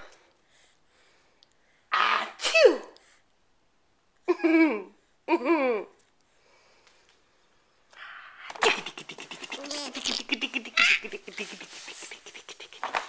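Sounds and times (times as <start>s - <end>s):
person sneezing: 1.9s - 3.0s, 8.5s - 9.6s
rapid breathy vocal pulses: 8.0s - 12.9s.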